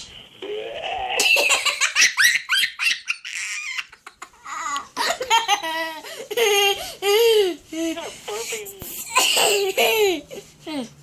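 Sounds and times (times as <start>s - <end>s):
toddler laughing: 1.2s - 7.6s, 8.3s - 10.5s.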